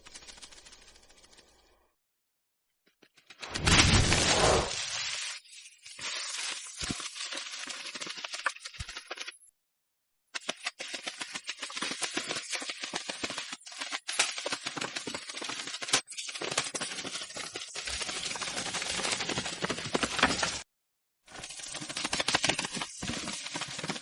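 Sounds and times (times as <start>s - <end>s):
rapid clatter of tiny clicks: 0.0s - 1.7s, 6.4s - 9.5s, 10.4s - 20.6s, 21.4s - 24.0s.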